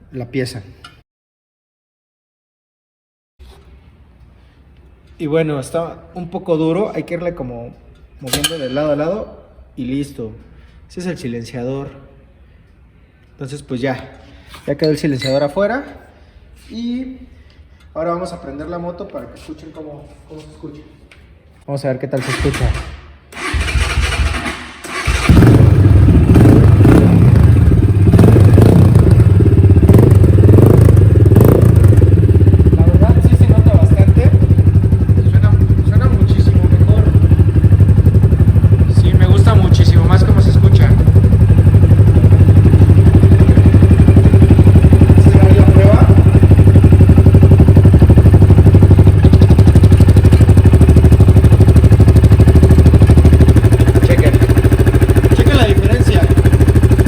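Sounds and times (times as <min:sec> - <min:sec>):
motorcycle engine running loudly: 0:25.0 - 0:57.0.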